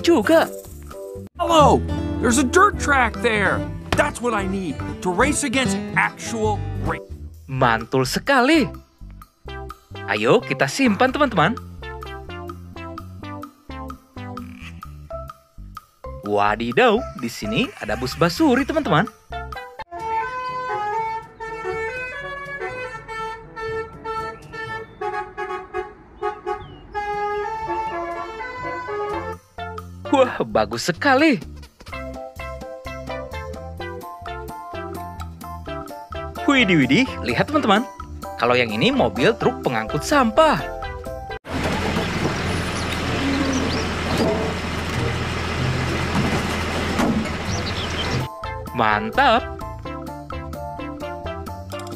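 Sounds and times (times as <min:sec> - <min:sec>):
multi-tone bus air horn tune: 0:19.9 - 0:29.4
heavy vehicle running: 0:41.5 - 0:48.3.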